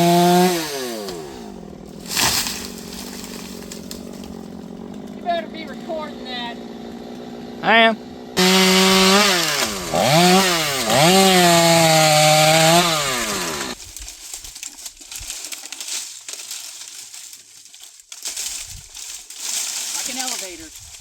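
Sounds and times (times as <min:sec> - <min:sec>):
chainsaw running: 0:00.0 - 0:13.8, 0:18.4 - 0:21.0
rustling and crackling: 0:01.9 - 0:05.8, 0:13.8 - 0:21.0.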